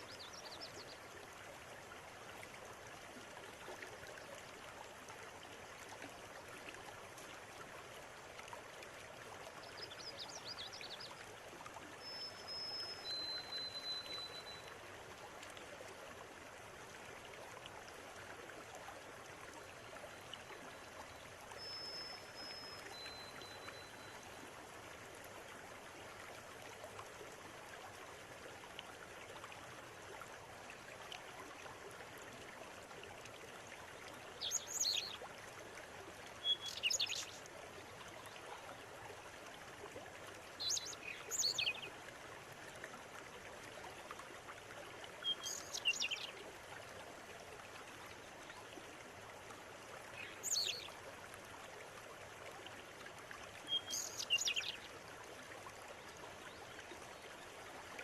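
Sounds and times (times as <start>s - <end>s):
river water running: 0.0s - 58.0s
bird chirping: 36.5s - 37.4s, 53.7s - 54.8s.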